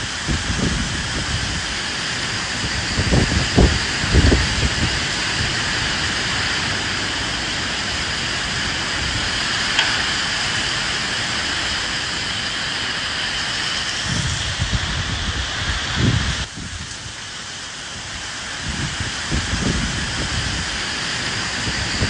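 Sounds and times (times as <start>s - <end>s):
low rumbles: 0.0s - 17.2s
rain hissing: 0.0s - 22.0s
wind: 0.0s - 22.0s.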